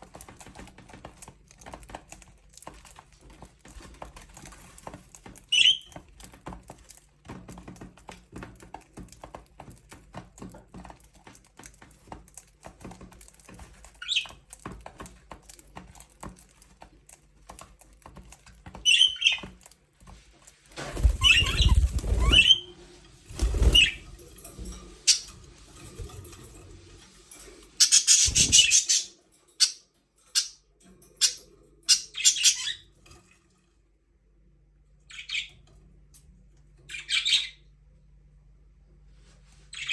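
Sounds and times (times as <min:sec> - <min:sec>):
small clicks and scratches: 0:00.0 - 0:22.6
wings flapping: 0:17.5 - 0:26.8, 0:27.8 - 0:29.1.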